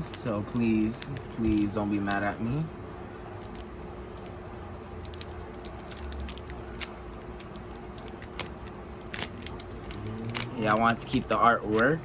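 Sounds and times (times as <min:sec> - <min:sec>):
faint steady hum: 0:00.0 - 0:12.0
foil wrapper crinkling: 0:03.4 - 0:12.0.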